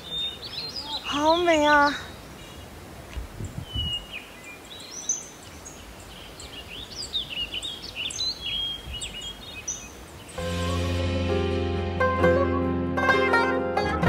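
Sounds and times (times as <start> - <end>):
small songbirds chirping: 0.0 - 11.1.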